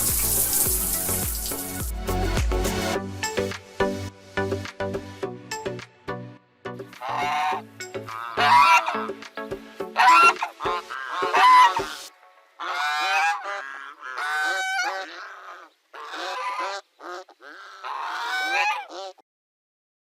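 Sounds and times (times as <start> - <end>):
music: 0.0 - 13.6
bird calling: 7.0 - 9.2, 10.0 - 19.2.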